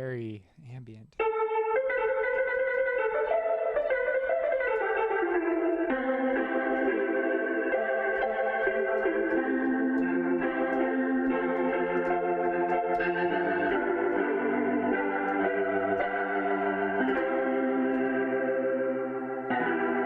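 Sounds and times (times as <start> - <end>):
keyboard playing held chords: 1.2 - 20.0.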